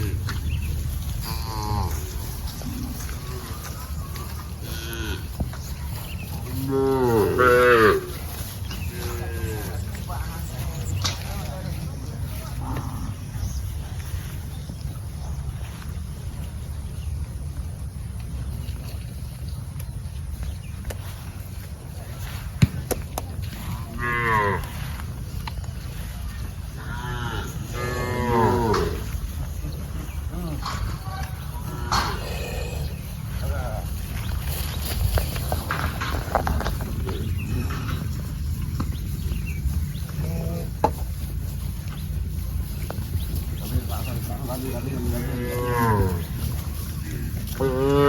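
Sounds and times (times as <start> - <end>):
low rumble: 0.0 - 22.5, 23.4 - 48.0
cattle mooing: 1.1 - 3.8, 4.6 - 5.4, 6.4 - 9.9, 23.8 - 24.9, 26.7 - 29.2, 31.2 - 33.0, 44.6 - 48.0
cow mooing: 1.2 - 2.2, 6.5 - 8.2, 23.9 - 24.8, 26.8 - 29.1, 45.0 - 46.4, 47.5 - 48.0.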